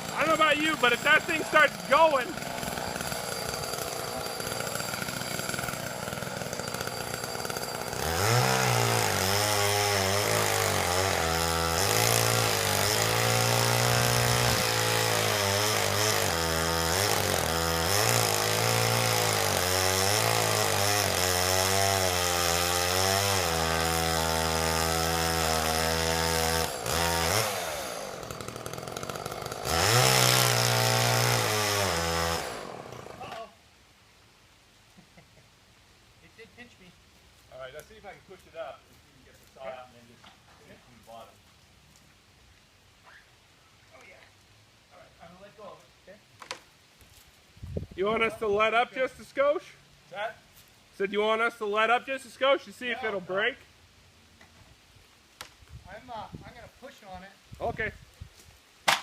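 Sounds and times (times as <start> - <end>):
chainsaw cutting tree trunk: 0.0 - 33.5
chainsaw idling: 0.0 - 33.5.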